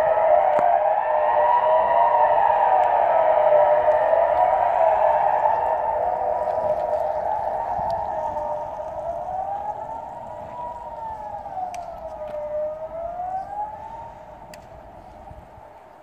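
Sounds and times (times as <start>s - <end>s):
siren rising and falling wail: 0.0s - 15.9s.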